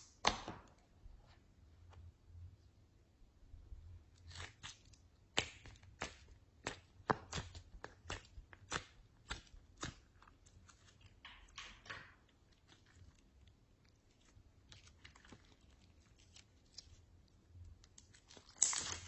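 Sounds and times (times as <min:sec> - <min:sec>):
slime squished by hand: 0:12.5 - 0:19.0.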